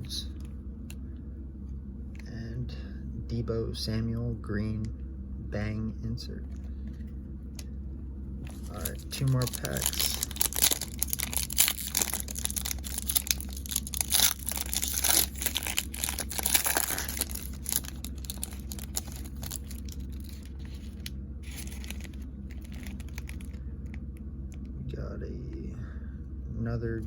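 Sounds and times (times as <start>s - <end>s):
foil wrapper tearing and crinkling: 8.5s - 23.6s.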